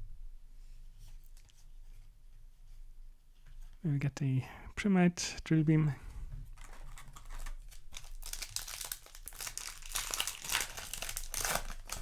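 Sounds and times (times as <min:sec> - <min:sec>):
foil wrapping crinkling: 0:06.6 - 0:12.0.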